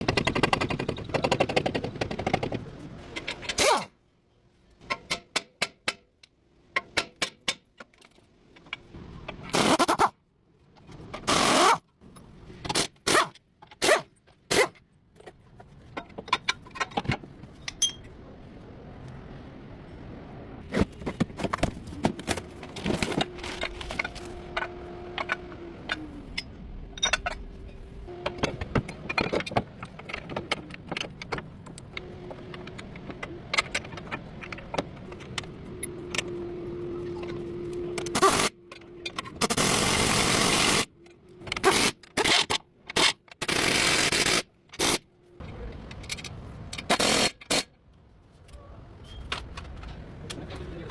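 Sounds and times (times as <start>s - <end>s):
metal tools clinking on metal: 16.0s - 18.1s, 23.6s - 27.8s.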